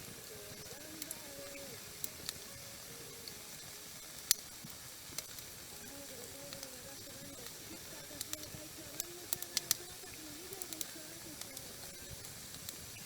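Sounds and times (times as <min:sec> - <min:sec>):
campfire crackling and hissing: 0:00.0 - 0:13.0.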